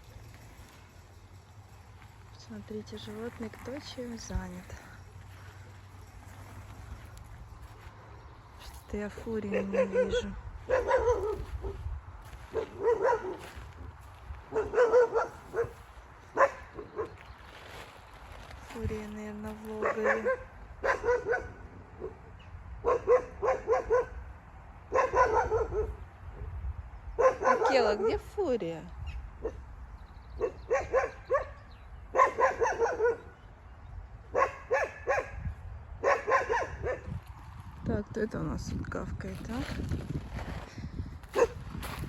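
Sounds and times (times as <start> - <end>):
wolf barking: 9.4 - 11.9, 12.5 - 13.9, 14.5 - 17.2, 19.8 - 24.2, 24.9 - 28.3, 30.4 - 33.4, 34.3 - 37.1, 41.4 - 41.6.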